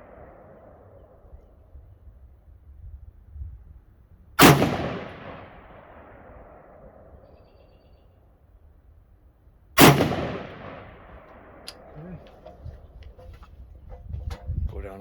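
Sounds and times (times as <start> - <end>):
rifle shots with echo: 0.0 - 1.8, 4.4 - 7.8, 9.8 - 12.6.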